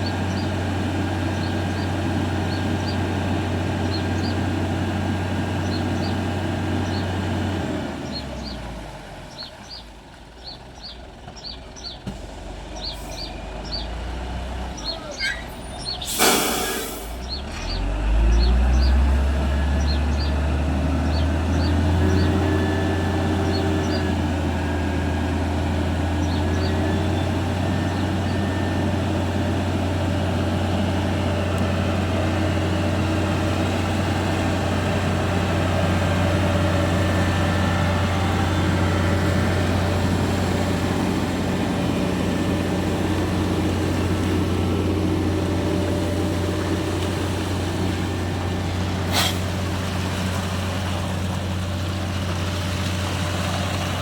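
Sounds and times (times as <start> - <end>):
diesel truck engine droning: 0.0 - 54.0.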